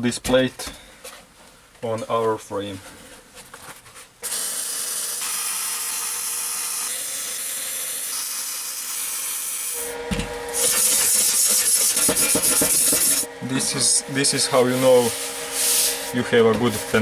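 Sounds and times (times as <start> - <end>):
welding arc crackling: 10.6 - 13.3.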